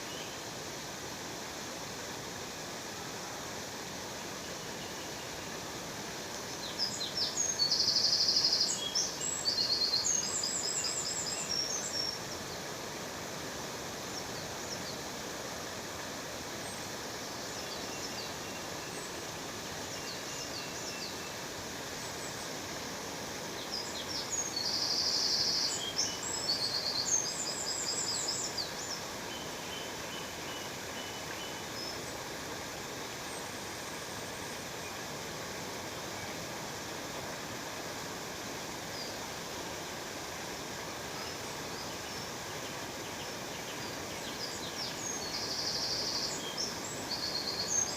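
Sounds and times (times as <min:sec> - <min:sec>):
songbird chirps and trills: 0:06.4 - 0:12.7, 0:16.8 - 0:32.4, 0:41.0 - 0:47.9.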